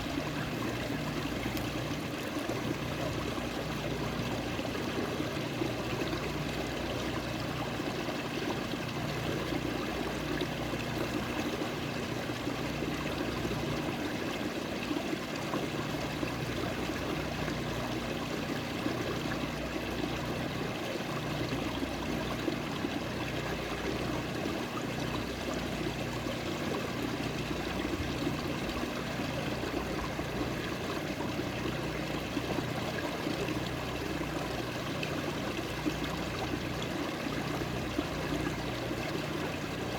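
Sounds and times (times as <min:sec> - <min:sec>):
water flowing in a stream: 0:00.0 - 0:39.9.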